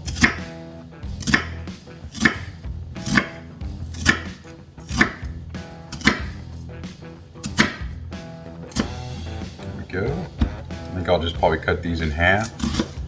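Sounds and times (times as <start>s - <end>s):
knife chopping onion on board: 0.0s - 0.5s, 1.2s - 3.4s, 4.0s - 5.3s, 6.0s - 6.4s, 7.4s - 7.9s.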